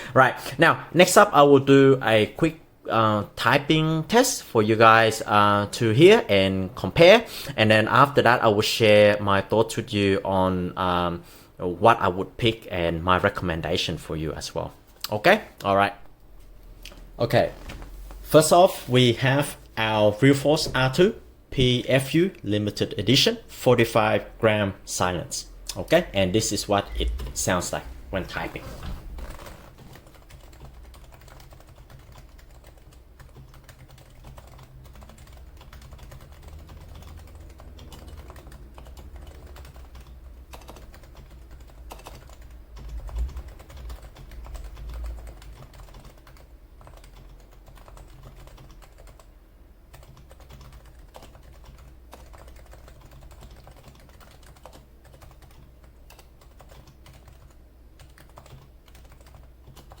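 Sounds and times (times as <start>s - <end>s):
steady low hum: 0.0s - 60.0s
muted keyboard typing: 29.2s - 49.3s, 49.9s - 60.0s.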